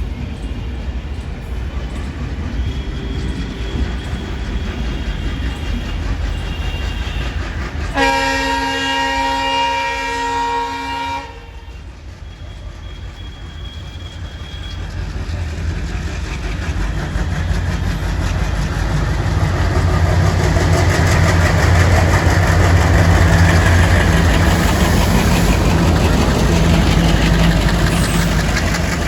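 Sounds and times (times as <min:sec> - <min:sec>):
diesel engines chugging: 0:00.0 - 0:29.0
locomotive horn blast: 0:06.4 - 0:11.9.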